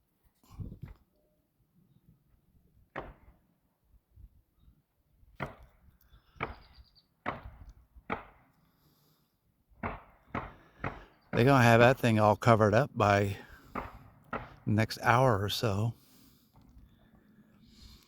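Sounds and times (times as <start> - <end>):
hammer striking wood: 2.9 - 3.3, 5.4 - 5.8, 6.4 - 8.5, 9.8 - 11.5, 13.6 - 14.7.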